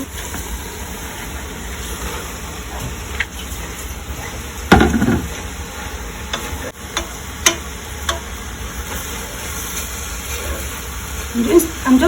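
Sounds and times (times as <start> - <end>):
low sizzle: 0.0 - 12.0
dull knock: 4.7 - 5.3.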